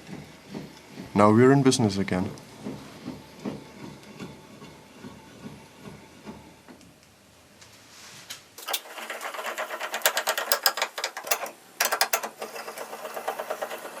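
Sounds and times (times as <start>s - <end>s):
vise metallic clicking and rattling: 8.6s - 14.0s.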